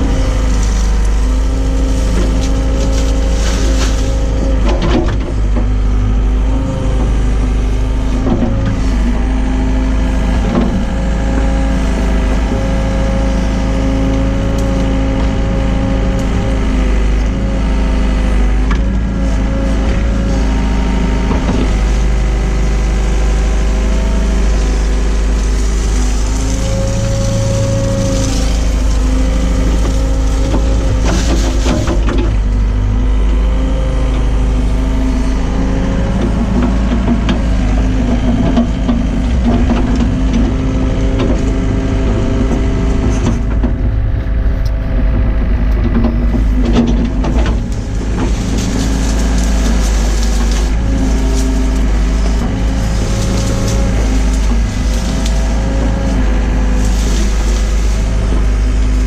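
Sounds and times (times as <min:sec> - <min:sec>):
scrapes and knocks: 0:00.0 - 0:05.9, 0:21.2 - 0:32.6, 0:45.1 - 0:59.0
excavator diesel engine running: 0:00.0 - 0:59.0.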